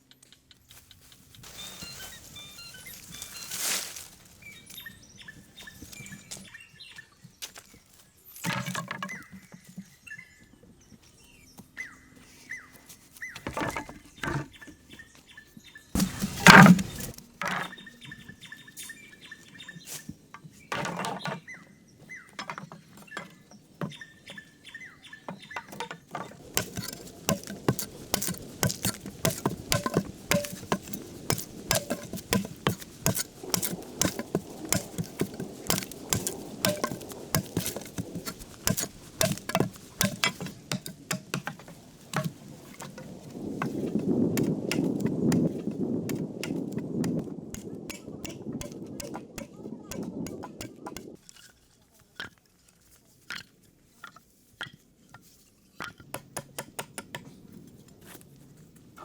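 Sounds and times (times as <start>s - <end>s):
birds chirping: 0.0s - 47.1s
knocks and thuds from hand work: 13.4s - 14.8s, 16.0s - 17.7s, 25.3s - 51.2s
rapid taps and scrapes: 16.0s - 17.7s, 25.3s - 58.2s.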